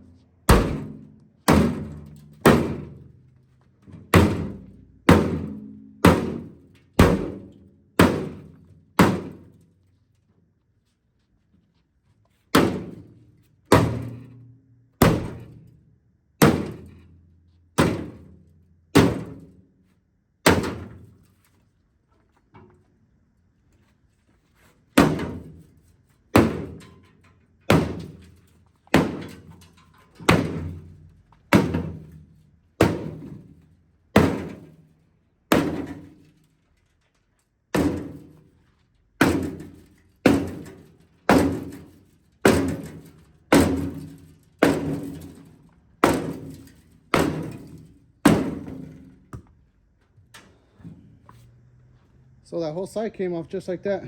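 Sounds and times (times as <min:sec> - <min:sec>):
hammer striking sheet steel: 0:00.5 - 0:03.0, 0:04.2 - 0:09.5, 0:15.0 - 0:15.6, 0:32.8 - 0:33.6, 0:35.5 - 0:36.2, 0:39.2 - 0:49.1.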